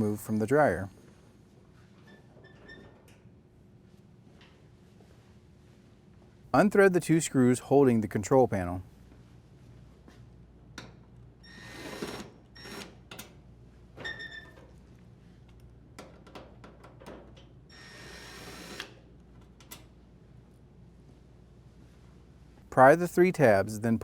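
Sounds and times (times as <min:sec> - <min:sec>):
cordless drill spinning: 0:11.5 - 0:12.9, 0:17.8 - 0:19.0.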